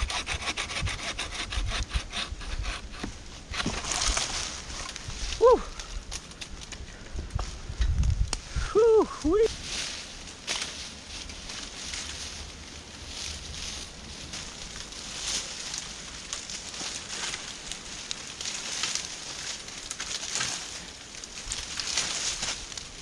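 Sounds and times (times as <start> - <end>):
wind rumble on microphone: 0.0 - 9.8
wind rustling dry brush: 0.0 - 23.0.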